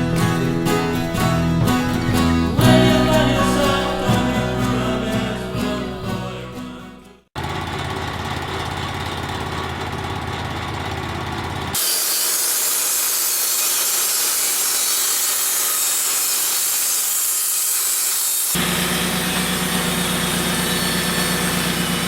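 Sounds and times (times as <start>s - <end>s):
band sawmill humming: 0.0s - 7.2s, 11.8s - 22.0s
band blade cutting log: 11.8s - 22.0s.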